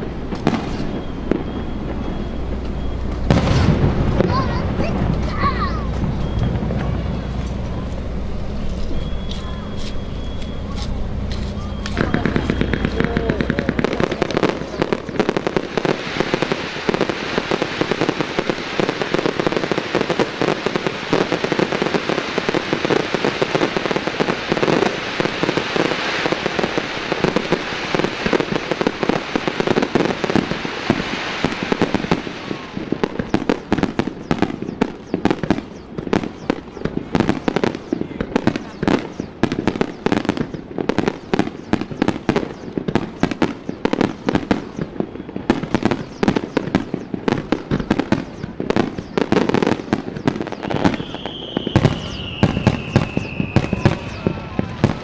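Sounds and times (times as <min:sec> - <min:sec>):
fireworks crackling and popping: 0:00.0 - 0:55.0.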